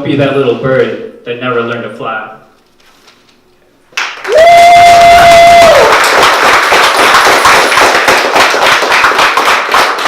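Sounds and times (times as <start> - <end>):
audience applause: 4.0 - 10.0
person cheering: 4.2 - 6.0.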